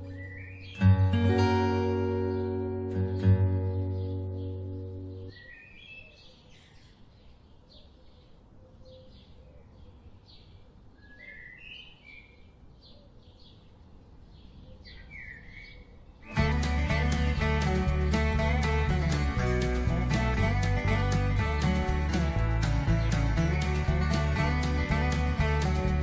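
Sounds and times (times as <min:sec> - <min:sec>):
birds chirping faintly: 0:00.0 - 0:26.0.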